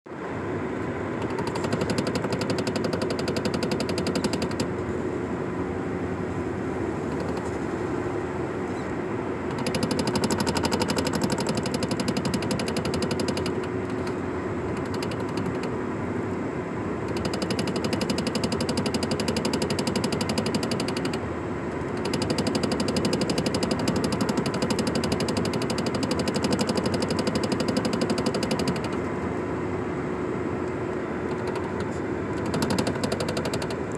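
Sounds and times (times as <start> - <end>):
steady hum: 0.1 - 33.9
rapid knocking from car: 1.2 - 4.7, 9.5 - 14.1, 14.7 - 15.7, 17.1 - 21.2, 21.9 - 29.0, 31.3 - 33.8.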